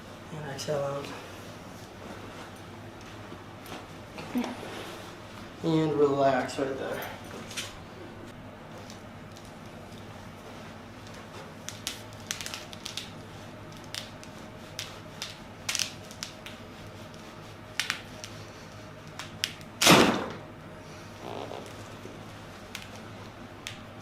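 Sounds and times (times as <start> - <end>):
loud thud: 19.8 - 20.4.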